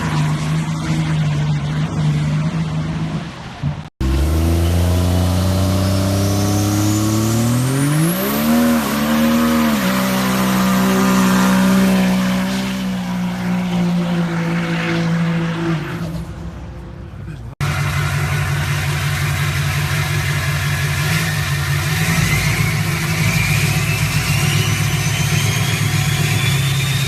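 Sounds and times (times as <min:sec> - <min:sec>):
diesel truck engine revving: 0:00.0 - 0:16.4, 0:17.3 - 0:27.0
tyres spinning in a burnout: 0:17.8 - 0:27.0
turbo whistle: 0:22.2 - 0:27.0.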